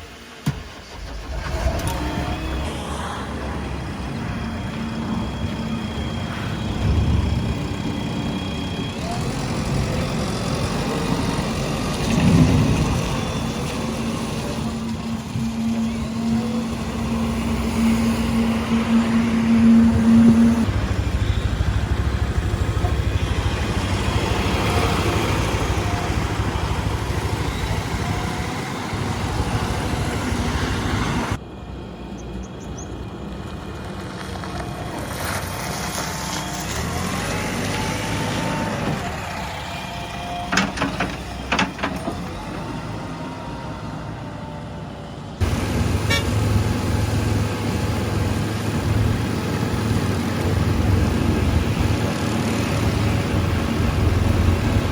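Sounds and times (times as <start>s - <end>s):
whine: 0.0s - 42.2s
diesel engine running: 0.0s - 54.9s.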